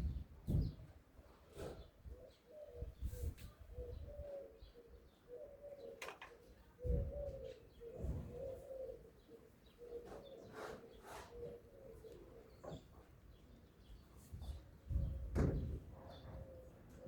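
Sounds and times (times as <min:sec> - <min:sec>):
pigeons cooing: 0:01.5 - 0:13.1, 0:16.0 - 0:17.0.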